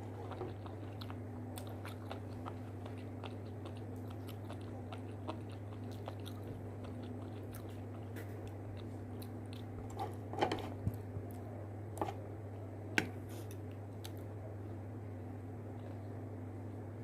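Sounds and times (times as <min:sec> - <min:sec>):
chewing with wet clicks and smacks: 0:00.0 - 0:11.5, 0:13.5 - 0:14.8
steady low hum: 0:00.0 - 0:17.0.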